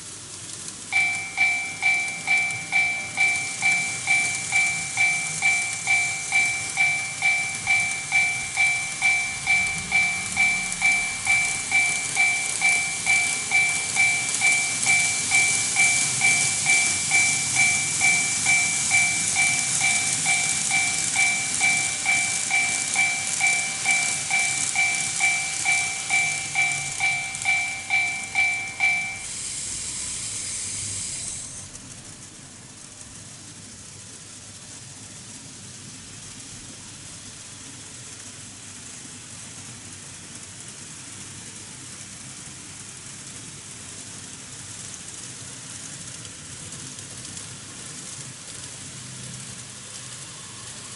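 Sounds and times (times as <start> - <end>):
model train running: 0.0 - 50.9
electronic warning bell dinging: 0.9 - 29.3.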